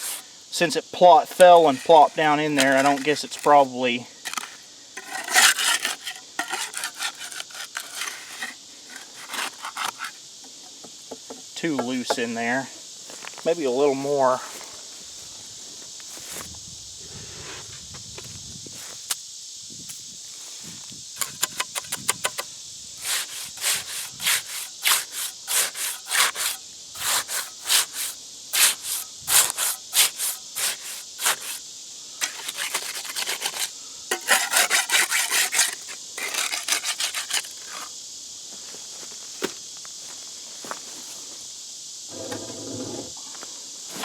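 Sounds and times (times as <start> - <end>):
scraping wet concrete: 0.0 - 10.2, 23.0 - 31.6, 32.2 - 37.9, 42.1 - 43.1.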